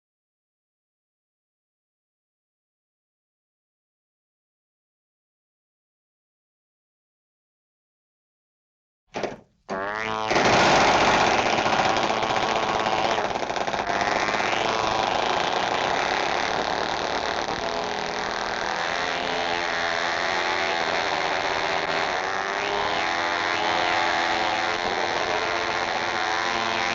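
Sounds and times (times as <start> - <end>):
mechanical clatter with whine: 10.1 - 26.9.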